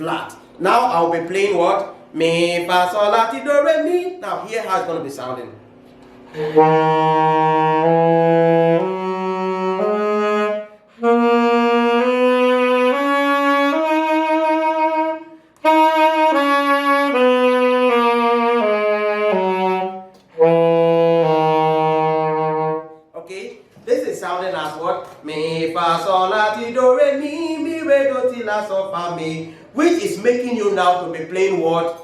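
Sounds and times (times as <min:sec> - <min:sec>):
saxophone playing a scale: 0:05.5 - 0:23.8.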